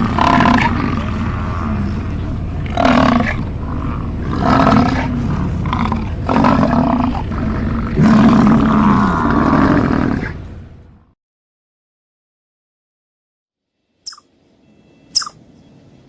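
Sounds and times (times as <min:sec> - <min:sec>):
bison bellowing: 0:00.0 - 0:11.0
steady low rumble: 0:00.0 - 0:11.2.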